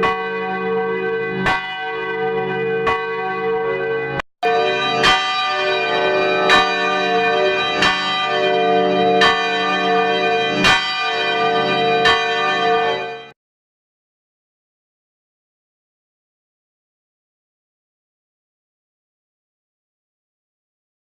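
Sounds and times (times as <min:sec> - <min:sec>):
church bell ringing: 0:00.0 - 0:13.4.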